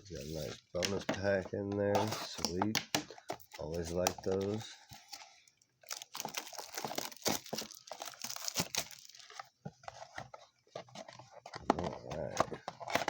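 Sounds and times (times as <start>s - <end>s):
card pack wrappers crinkling and tearing: 3.4s - 9.5s.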